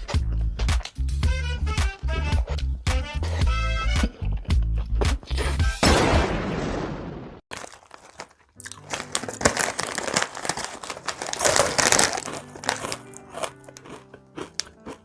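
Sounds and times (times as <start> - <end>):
background music: 0.0 - 5.9, 8.6 - 15.0
plastic packaging crinkling: 7.5 - 14.8.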